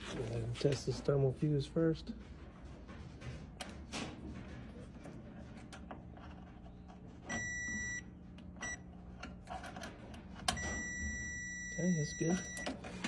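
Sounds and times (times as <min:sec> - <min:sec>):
multimeter continuity beep: 0:07.3 - 0:08.8, 0:10.5 - 0:12.8.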